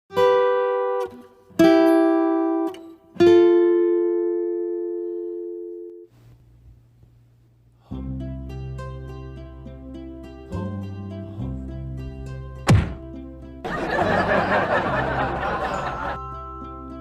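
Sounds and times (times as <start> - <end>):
plucked string chords: 0.1 - 6.1, 7.9 - 17.0.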